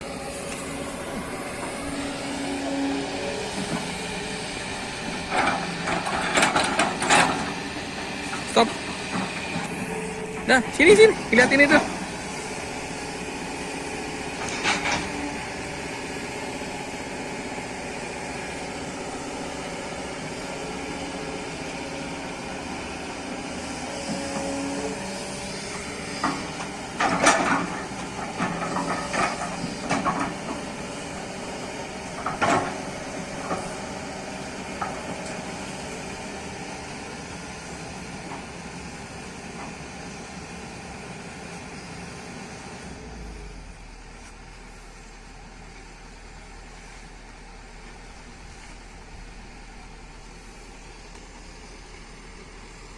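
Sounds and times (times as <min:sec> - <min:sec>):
excavator diesel engine humming: 0:00.0 - 0:52.9.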